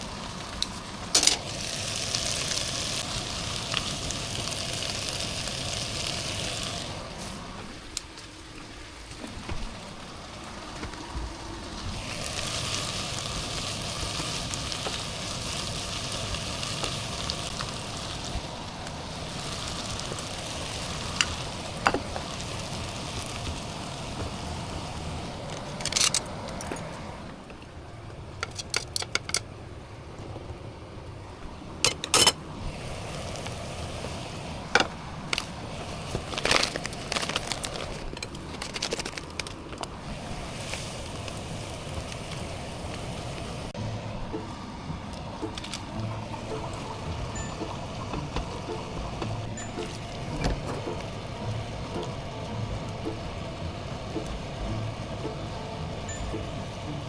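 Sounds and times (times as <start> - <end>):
food sizzling in a frying pan: 0.0 - 9.0, 10.0 - 27.0, 32.2 - 34.7, 40.0 - 57.0.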